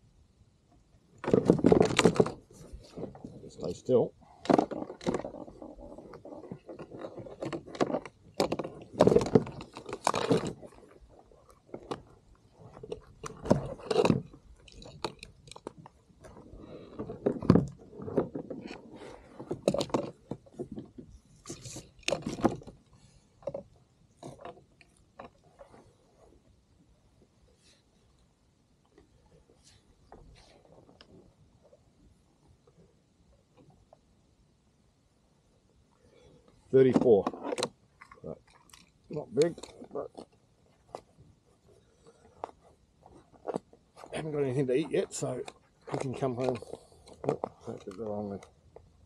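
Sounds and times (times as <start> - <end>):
knocks and scrapes on kayak hull: 1.2 - 3.5, 4.2 - 26.5.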